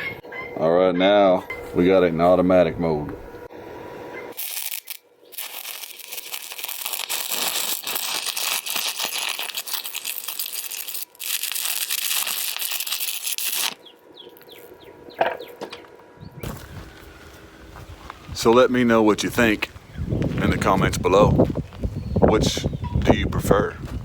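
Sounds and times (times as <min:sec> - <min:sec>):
arc welding crackling: 0:04.3 - 0:14.9.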